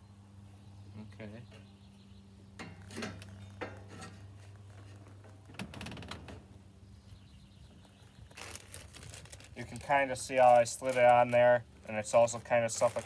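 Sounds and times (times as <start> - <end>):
bumper scraping and clinking: 8.4 - 13.0.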